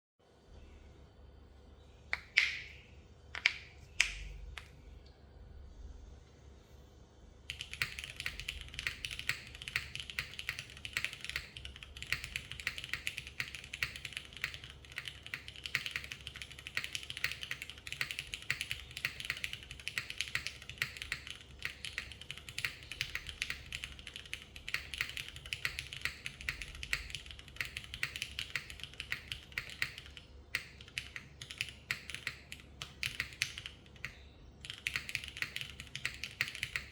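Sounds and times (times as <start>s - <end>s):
loud keyboard clacks: 7.5s - 36.9s
mechanical keyboard typing: 7.5s - 36.9s.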